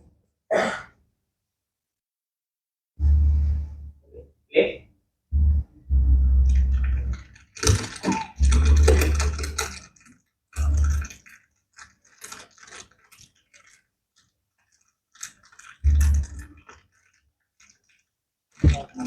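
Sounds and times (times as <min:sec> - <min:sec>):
low thumps: 0:03.0 - 0:04.0, 0:05.3 - 0:07.8, 0:08.4 - 0:09.6
plastic crumpling crackles: 0:06.5 - 0:19.0.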